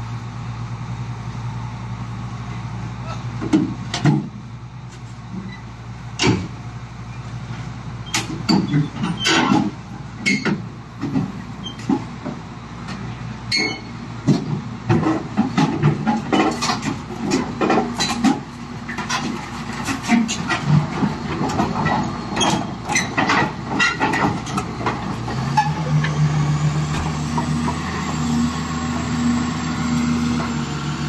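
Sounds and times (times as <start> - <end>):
excavator engine humming: 0.0 - 31.0
metallic clanks and knocks: 8.1 - 26.2.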